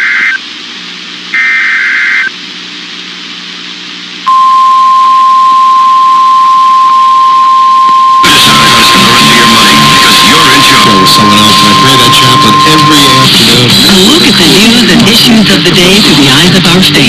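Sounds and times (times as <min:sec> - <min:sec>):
loud static: 0:00.0 - 0:17.0
steady attention tone: 0:04.2 - 0:17.0
digital data bursts: 0:08.2 - 0:17.0.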